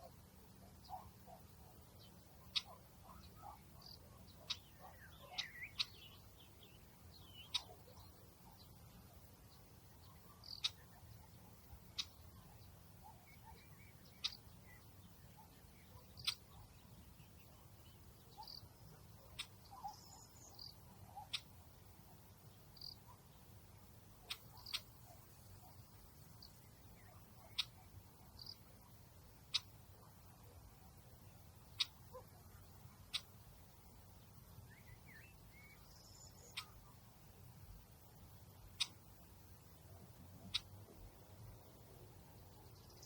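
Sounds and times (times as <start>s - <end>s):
small animal chirps and ticks: 0.0s - 37.1s, 37.8s - 41.0s, 42.5s - 43.0s.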